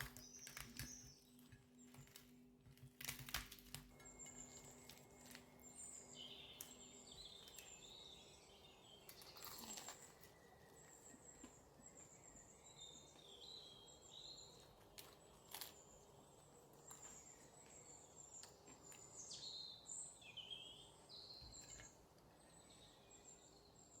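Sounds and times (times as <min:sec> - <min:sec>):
faint birds chirping: 0:00.0 - 0:24.0.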